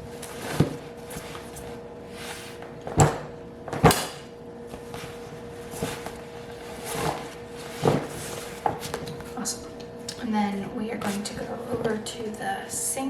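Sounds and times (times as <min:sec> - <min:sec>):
plastic bag rustling: 0:00.0 - 0:03.1, 0:04.6 - 0:09.5, 0:10.4 - 0:12.2.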